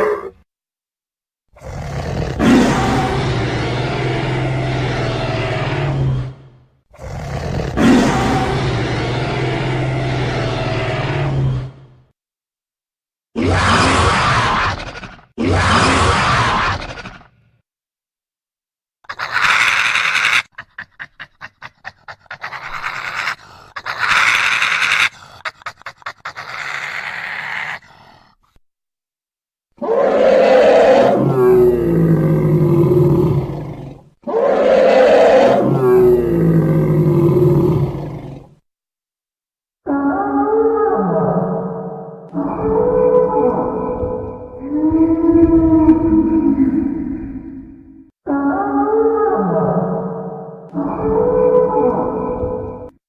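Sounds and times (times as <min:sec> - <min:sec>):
dinosaur roar: 0:00.0 - 0:00.4, 0:01.6 - 0:12.0, 0:13.4 - 0:17.4, 0:19.1 - 0:28.4, 0:29.8 - 0:38.6, 0:39.9 - 0:53.0
creature breathy hisses: 0:19.1 - 0:28.5.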